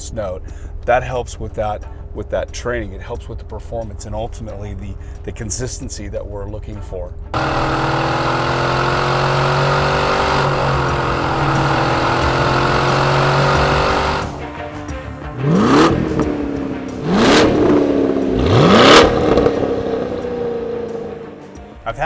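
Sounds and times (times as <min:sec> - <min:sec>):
car engine revving: 0:07.1 - 0:22.0.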